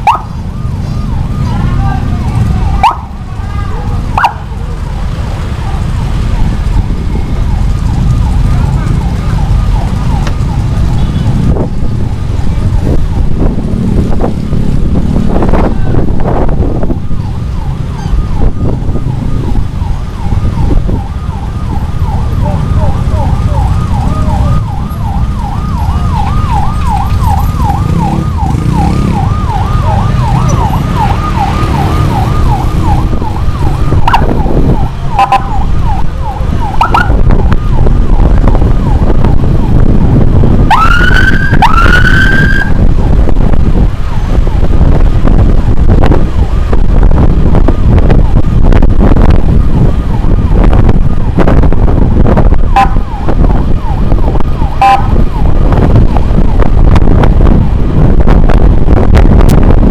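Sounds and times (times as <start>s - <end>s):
electronic siren yelping: 0.0s - 11.2s, 16.8s - 40.0s, 40.6s - 42.9s, 52.5s - 55.7s
motorcycle riding noise: 0.0s - 59.9s
wind: 0.0s - 59.9s.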